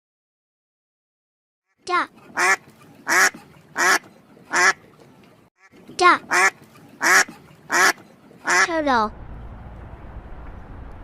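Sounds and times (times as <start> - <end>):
duck quacking: 2.3 - 4.9, 5.6 - 8.8.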